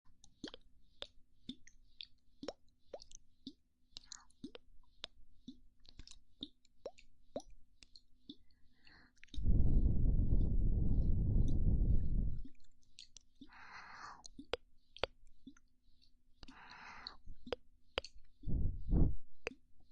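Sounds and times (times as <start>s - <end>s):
breath blown onto microphone: 9.4s - 12.5s, 13.5s - 14.2s.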